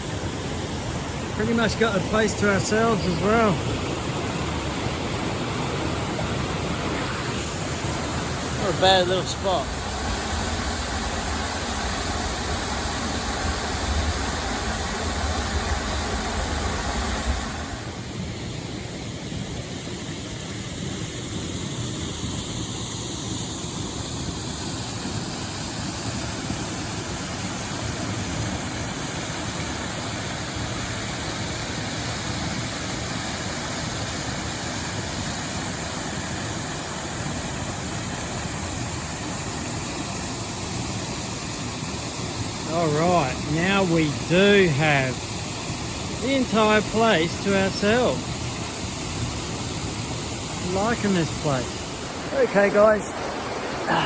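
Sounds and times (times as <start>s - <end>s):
waterfall splashing into a pool: 7.6s - 17.9s, 19.8s - 51.9s.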